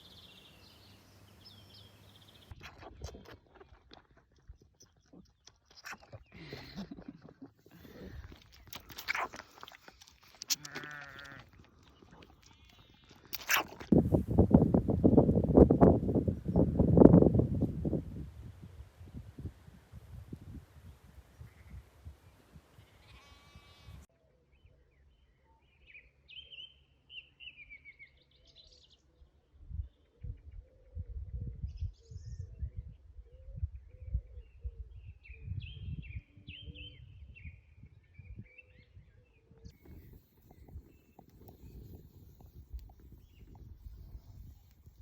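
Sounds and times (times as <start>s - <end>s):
songbird singing: 0.0s - 2.7s, 20.8s - 45.0s
sheep bleating: 10.6s - 11.6s, 23.0s - 24.0s.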